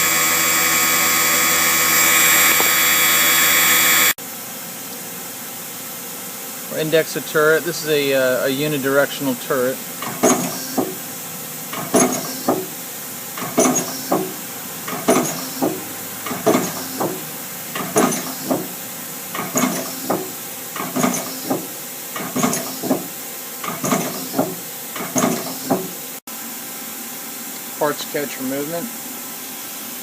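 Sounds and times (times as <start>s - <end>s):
steady machine hiss: 6.6s - 26.2s
lathe tool turret clunks: 10.0s - 11.0s, 11.8s - 12.7s, 13.4s - 18.8s, 19.4s - 26.0s.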